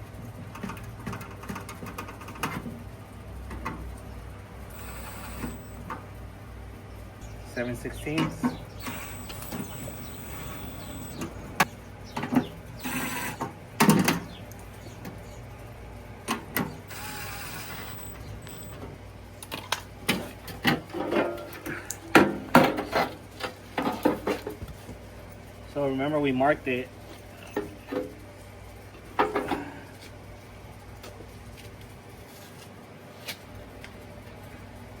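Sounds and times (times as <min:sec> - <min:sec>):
metal parts scraping: 0:08.8 - 0:11.4.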